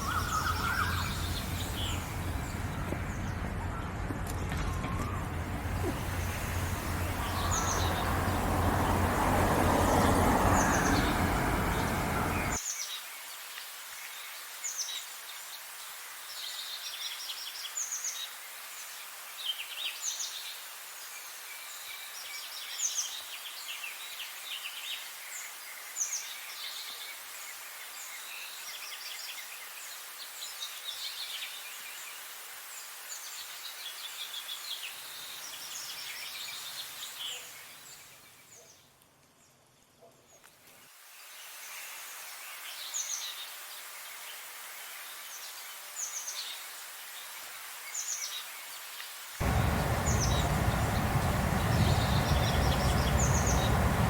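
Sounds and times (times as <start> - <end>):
songbirds chirping: 0.0 - 13.0, 49.4 - 54.0
outdoor ambient hiss: 0.0 - 54.0
loud rumbling rushing noise: 0.7 - 12.6, 49.4 - 54.0.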